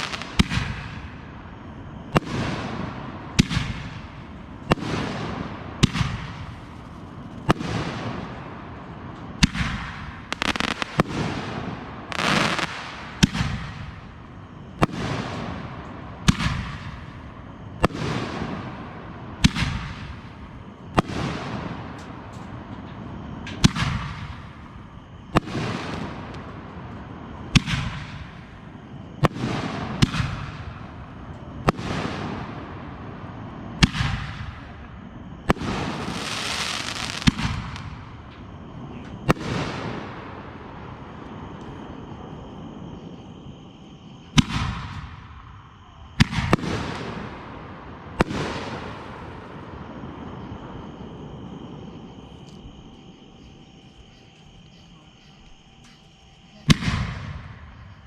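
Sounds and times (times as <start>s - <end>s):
fireworks crackling: 0.0s - 1.5s, 2.1s - 22.7s, 23.5s - 31.0s, 35.4s - 38.4s
fireworks bangs: 0.0s - 43.2s, 44.2s - 54.7s, 56.5s - 58.0s
crackling hiss: 0.0s - 58.0s.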